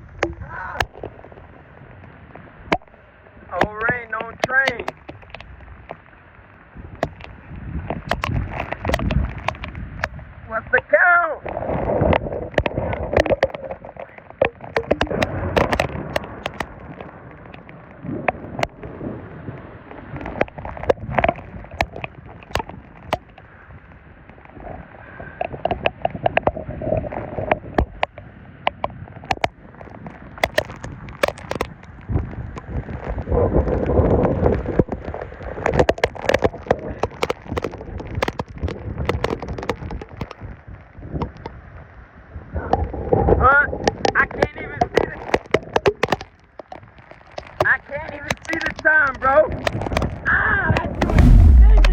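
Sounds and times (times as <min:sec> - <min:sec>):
rain falling: 0:00.0 - 0:10.0, 0:51.0 - 0:51.9
raindrops tapping near microphone: 0:00.0 - 0:10.3, 0:11.4 - 0:41.9, 0:43.8 - 0:51.9
steady rain falling: 0:00.0 - 0:25.5, 0:29.5 - 0:42.2.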